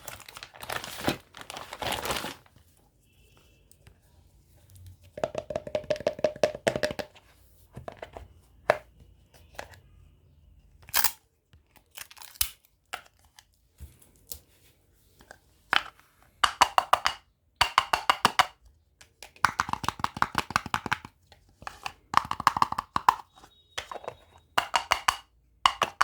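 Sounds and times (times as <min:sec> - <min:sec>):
packaging tearing and crinkling: 0:00.0 - 0:02.5.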